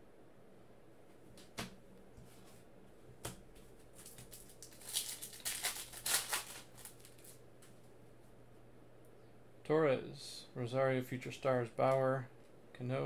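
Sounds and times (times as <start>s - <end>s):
foil pack crinkling: 3.9s - 7.4s.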